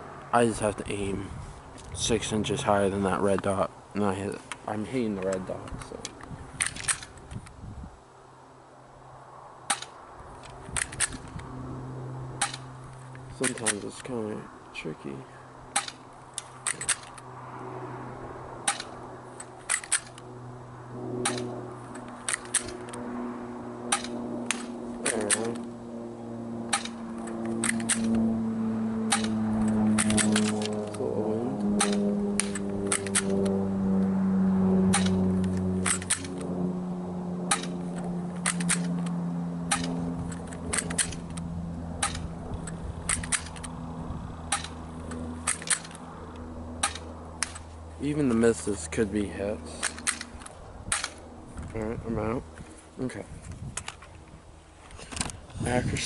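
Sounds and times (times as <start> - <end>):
steady low hum: 0.0 - 56.0
toy pistol clicks and snaps: 5.2 - 7.5, 9.7 - 11.4, 15.8 - 17.2, 18.7 - 20.2, 21.2 - 23.0, 23.9 - 25.7, 26.7 - 28.3, 29.1 - 31.0, 31.8 - 33.6, 34.9 - 36.5, 37.5 - 43.7, 44.5 - 46.0, 46.8 - 47.6, 49.8 - 51.2.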